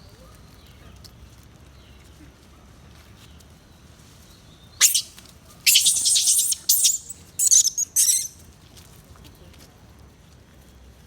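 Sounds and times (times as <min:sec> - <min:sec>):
shrill animal screeches: 0:04.8 - 0:08.4.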